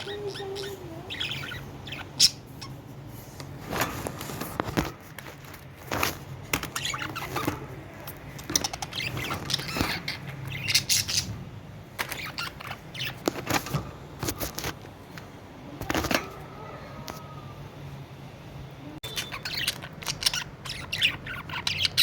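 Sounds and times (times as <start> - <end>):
budgerigars chirping: 0.0 - 2.8, 6.7 - 7.5, 8.5 - 11.4, 12.1 - 13.2, 19.0 - 22.0.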